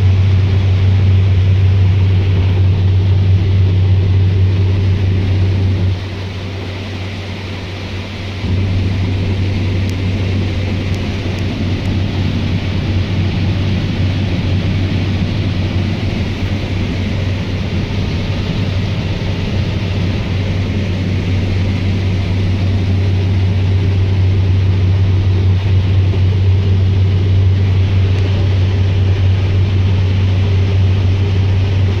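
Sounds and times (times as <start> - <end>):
diesel machinery droning: 0.0 - 32.0.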